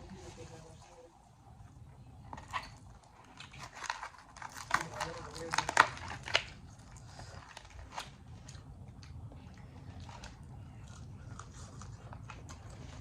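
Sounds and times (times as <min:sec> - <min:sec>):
person chewing food: 0:05.5 - 0:13.0.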